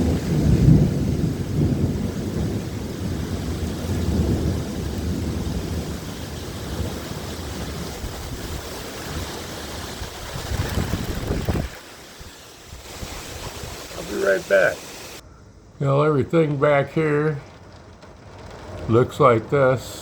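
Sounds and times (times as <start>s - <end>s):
thunder rumble: 0.0s - 20.0s
wind and rain rushing: 0.0s - 20.0s.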